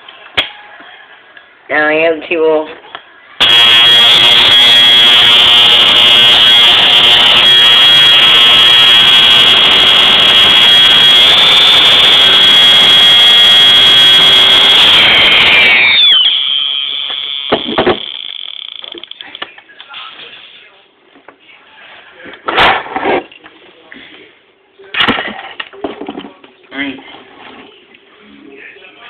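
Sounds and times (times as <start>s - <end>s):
fire alarm horn tone: 3.4s - 18.8s.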